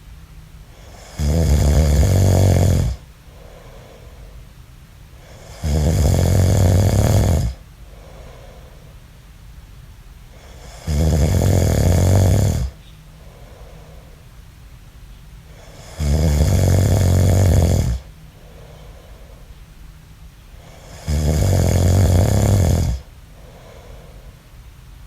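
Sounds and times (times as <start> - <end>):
man snoring loudly: 0.8 - 3.0, 5.2 - 7.6, 10.4 - 12.8, 15.6 - 18.1, 20.6 - 23.1.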